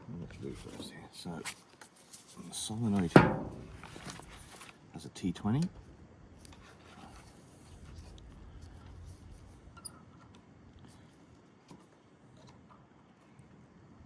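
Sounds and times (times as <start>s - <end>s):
low steady hum: 2.2s - 11.6s.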